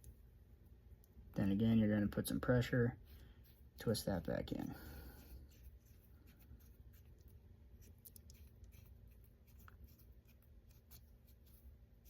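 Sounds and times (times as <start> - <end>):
faint scratching and ticking: 2.9 - 12.0.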